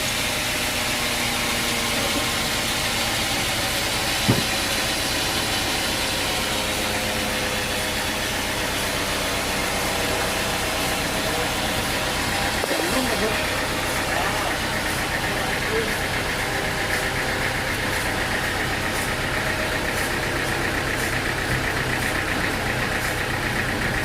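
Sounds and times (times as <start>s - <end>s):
engine running steadily: 0.0s - 24.0s
sharp knock: 4.2s - 4.7s.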